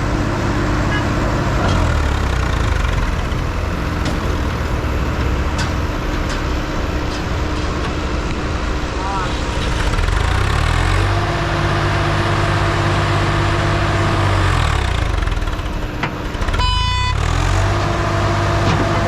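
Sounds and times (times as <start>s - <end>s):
vehicle engine running: 0.0s - 19.0s
short high beep: 16.6s - 17.2s.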